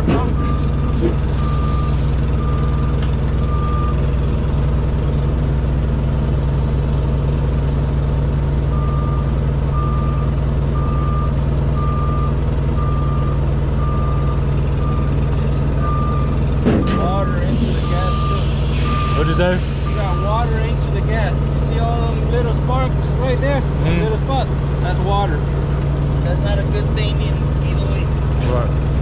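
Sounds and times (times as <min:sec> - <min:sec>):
engine droning: 0:00.0 - 0:29.0
backup alarm beeping: 0:00.1 - 0:04.0, 0:15.8 - 0:20.5.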